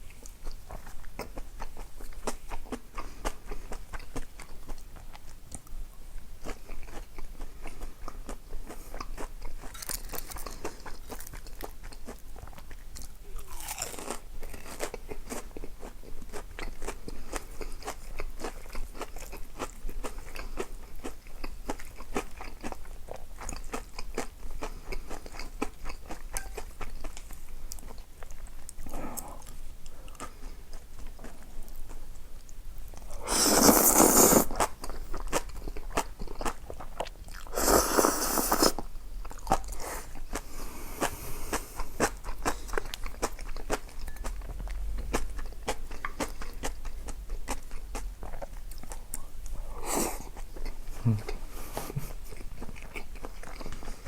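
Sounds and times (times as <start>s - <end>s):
crisp food crunching: 6.4s - 28.8s.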